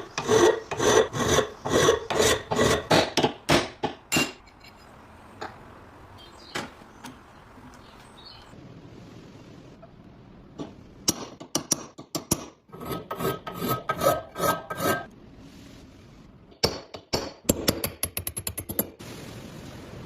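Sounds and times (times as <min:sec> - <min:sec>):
rasping scraping strokes: 0:00.0 - 0:02.9, 0:12.7 - 0:15.1.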